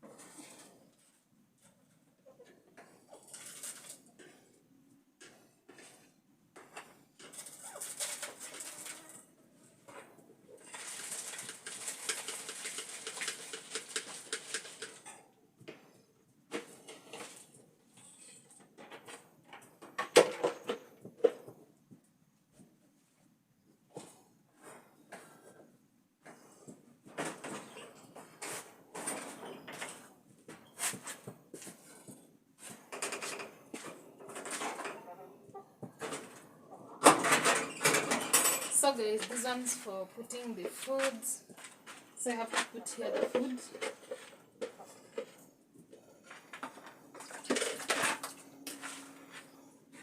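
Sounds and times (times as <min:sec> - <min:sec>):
objects scraping and knocking: 0:00.0 - 0:04.6, 0:05.2 - 0:21.9, 0:23.6 - 0:50.0
quick clicks and rustling: 0:10.6 - 0:15.1
chickens clucking: 0:34.8 - 0:35.8.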